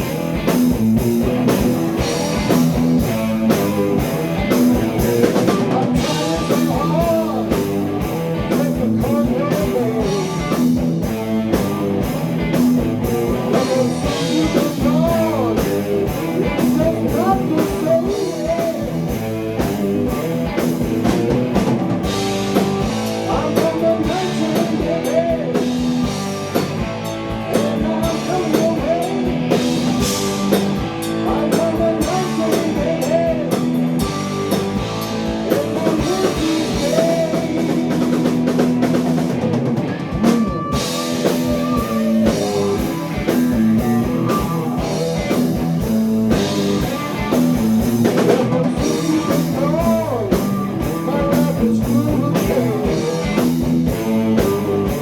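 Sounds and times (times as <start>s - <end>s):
hard rock band playing: 0.0s - 55.0s
bending electric guitar notes: 28.9s - 51.2s.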